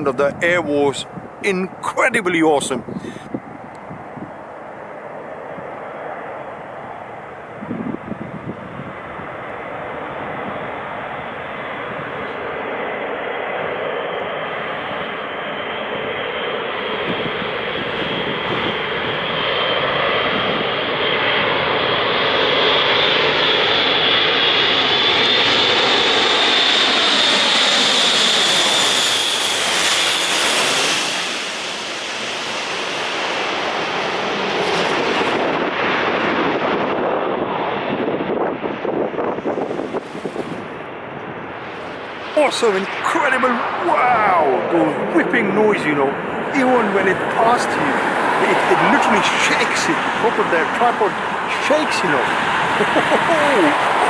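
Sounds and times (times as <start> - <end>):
turboprop aircraft passing low: 2.8 - 54.0
propeller wash whooshing: 41.6 - 54.0.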